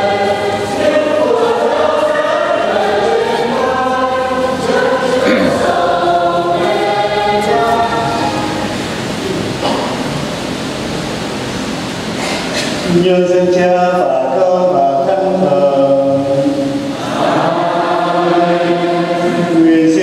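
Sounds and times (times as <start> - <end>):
church choir singing a hymn: 0.0 - 10.1, 12.9 - 20.0.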